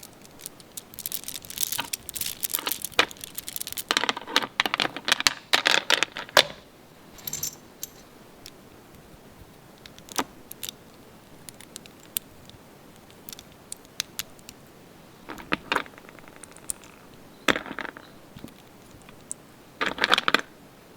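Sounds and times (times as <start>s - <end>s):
plastic toy pieces clicking: 0.0s - 4.2s, 13.0s - 14.6s
plastic pieces clattering: 0.0s - 6.5s.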